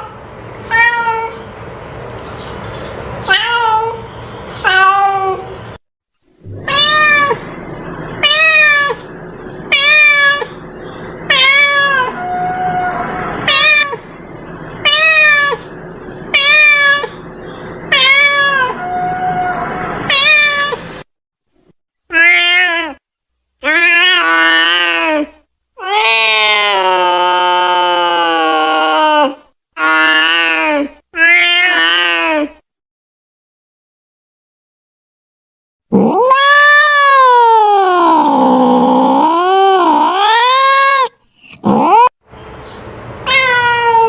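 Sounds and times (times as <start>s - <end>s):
cat meowing: 0.7s - 1.4s, 3.3s - 4.0s, 6.5s - 7.6s, 8.2s - 9.1s, 9.7s - 10.6s, 11.2s - 14.1s, 14.8s - 15.7s, 16.3s - 17.2s, 17.9s - 20.9s, 22.1s - 23.0s, 23.6s - 25.2s, 25.8s - 28.2s, 31.2s - 32.5s, 36.0s - 42.1s, 43.3s - 44.0s.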